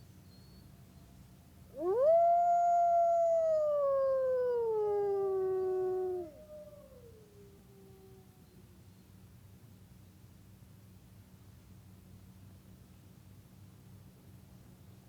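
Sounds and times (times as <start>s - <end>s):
wolf howling: 1.8s - 8.3s.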